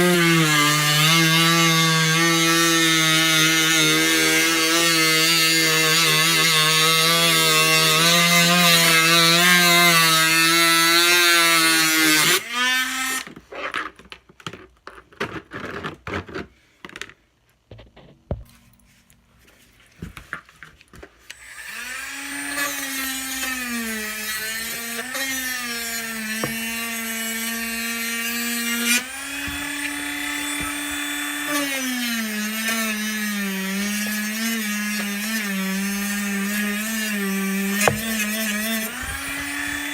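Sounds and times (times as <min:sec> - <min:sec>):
power tool motor whining: 0:21.3 - 0:39.9.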